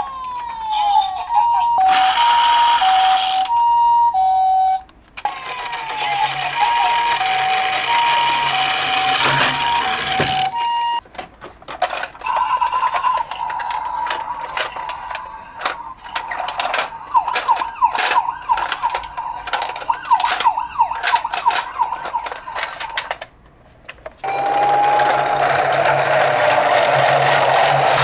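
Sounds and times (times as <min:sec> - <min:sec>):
toy electronic siren: 0:00.0 - 0:11.0, 0:12.3 - 0:23.0, 0:24.2 - 0:27.9
plastic clicks clattering: 0:09.2 - 0:12.4, 0:13.0 - 0:24.2.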